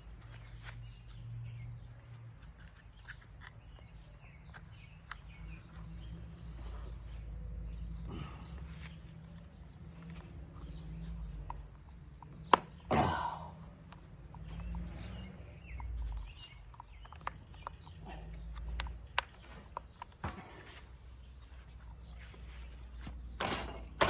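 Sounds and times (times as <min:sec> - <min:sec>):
plastic clicks and handling noises: 0:02.3 - 0:06.1, 0:15.7 - 0:20.8.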